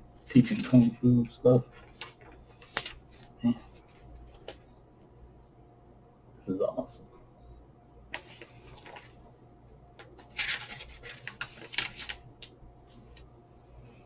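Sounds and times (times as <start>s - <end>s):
paper pages rustling: 0.3s - 4.7s, 8.1s - 13.3s
small paper clicks: 10.0s - 13.2s.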